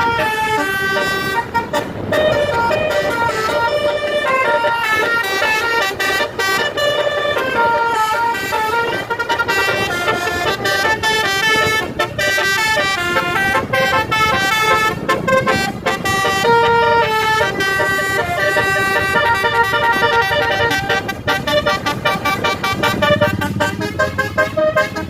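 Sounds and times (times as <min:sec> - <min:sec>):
bus air horn playing a melody: 0:00.0 - 0:25.0.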